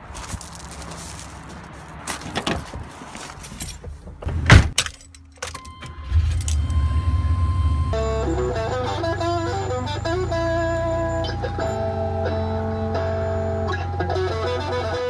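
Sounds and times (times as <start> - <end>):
car engine starting and running: 0.1 - 15.0
keys jangling: 2.1 - 6.8
car door shutting: 2.2 - 4.9
warning chime tone: 5.6 - 15.0.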